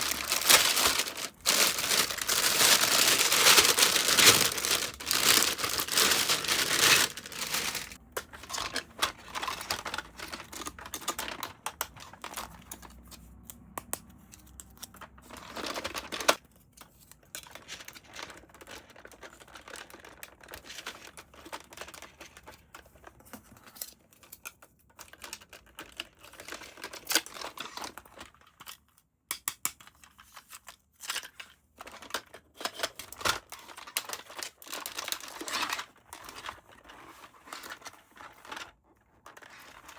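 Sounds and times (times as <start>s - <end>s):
packaging crinkling and rustling: 0.0s - 13.0s, 14.6s - 16.4s, 17.4s - 23.8s, 30.1s - 39.9s.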